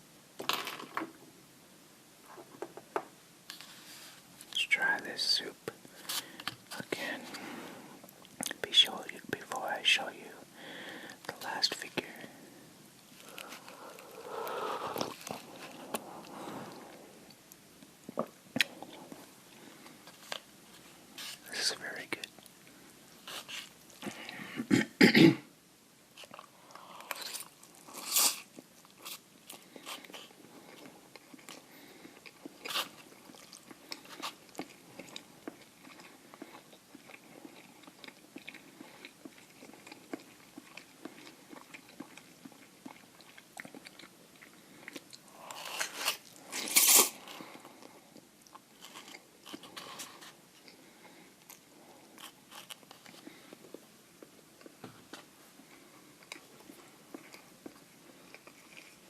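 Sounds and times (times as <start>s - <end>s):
chewing and wet mouth sounds: 8.0s - 10.4s, 12.9s - 24.4s, 26.2s - 59.0s.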